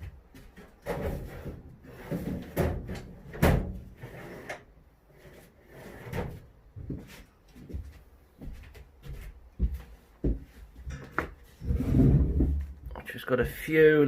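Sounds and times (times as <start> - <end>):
knocks and clatters on a workbench: 10.3 - 11.5.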